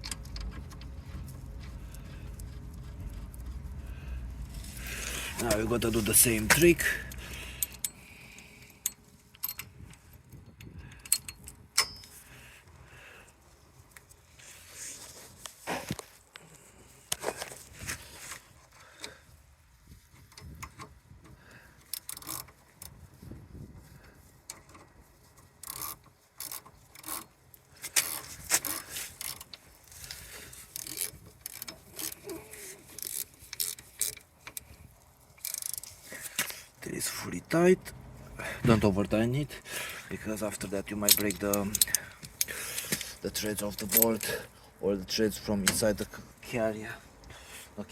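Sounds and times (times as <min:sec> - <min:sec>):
hand tools clinking on metal: 0:11.0 - 0:12.3, 0:40.6 - 0:44.5
ratchet wrench clicking: 0:21.8 - 0:22.6, 0:25.6 - 0:29.5, 0:30.7 - 0:32.2, 0:32.9 - 0:34.6, 0:35.4 - 0:36.6.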